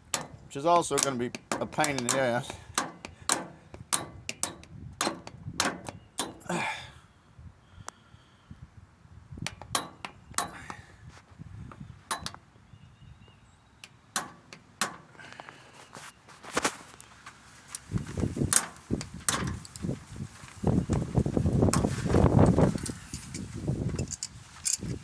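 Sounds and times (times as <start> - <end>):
hand tools tapping metal: 0.0 - 6.6, 9.5 - 10.8, 12.1 - 12.4, 13.8 - 15.5, 18.5 - 19.9.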